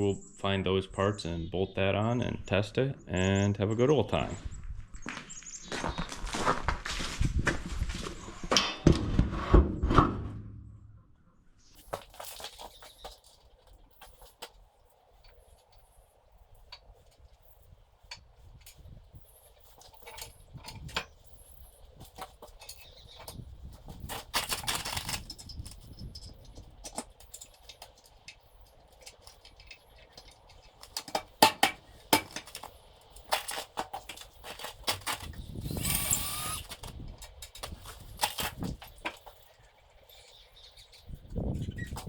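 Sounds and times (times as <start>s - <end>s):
scraping or shuffling: 5.1s - 10.4s
tools and bolts clinking: 11.8s - 41.1s.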